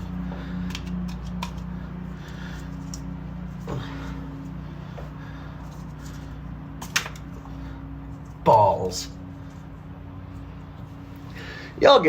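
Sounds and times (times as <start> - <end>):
steady low hum: 0.0 - 12.0
light clicks and taps of tools: 0.6 - 1.7.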